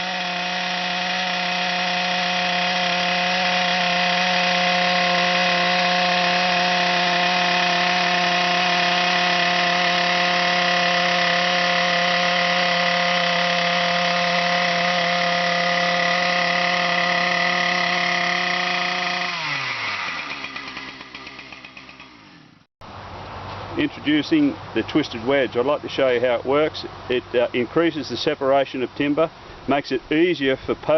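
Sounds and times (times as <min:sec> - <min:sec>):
chainsaw ripping wood: 0:00.0 - 0:22.6.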